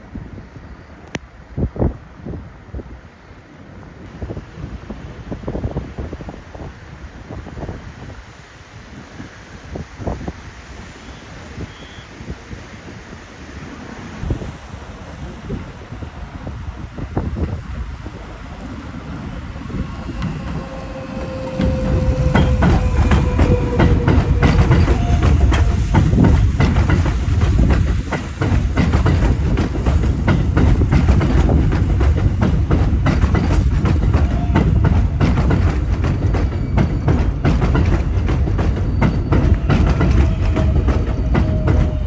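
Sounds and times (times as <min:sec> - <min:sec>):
subway wheels clicking over rail joints: 0:17.0 - 0:42.0.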